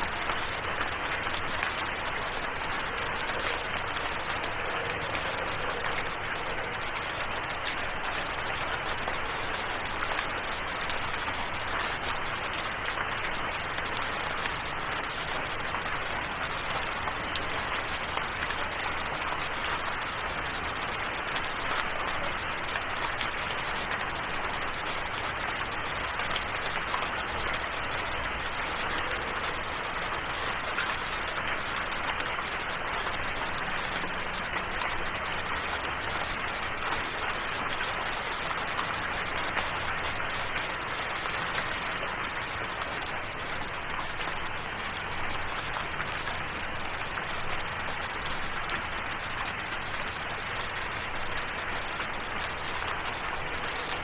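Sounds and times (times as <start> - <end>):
steady rain hiss: 0.0 - 54.0.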